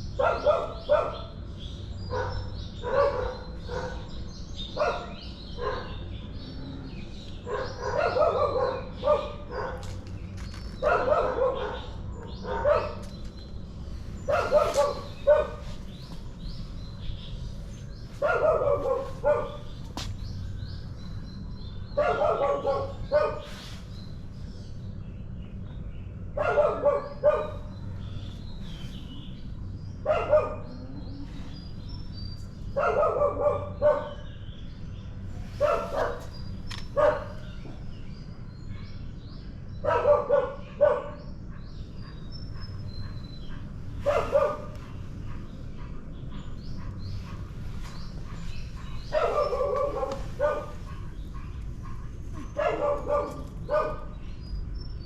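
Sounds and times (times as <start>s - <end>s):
birds chirping: 0.0s - 55.0s
dog barking: 0.2s - 1.4s, 2.1s - 4.1s, 4.8s - 6.1s, 7.4s - 10.0s, 10.8s - 13.1s, 14.3s - 15.8s, 18.2s - 19.8s, 21.9s - 23.5s, 26.4s - 27.8s, 30.0s - 30.9s, 32.7s - 34.3s, 35.6s - 37.7s, 39.8s - 54.2s.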